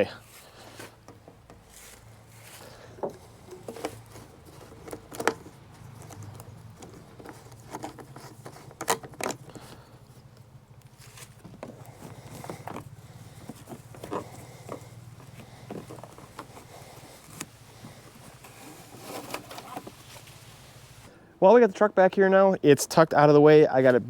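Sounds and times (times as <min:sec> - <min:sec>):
steady low hum: 0:00.0 - 0:21.4
hands clicking and tapping parts: 0:02.8 - 0:19.9.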